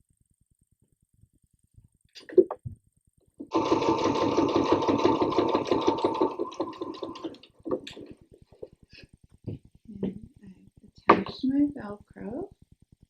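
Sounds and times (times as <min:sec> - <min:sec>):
sewing machine stitching: 0:03.4 - 0:08.1.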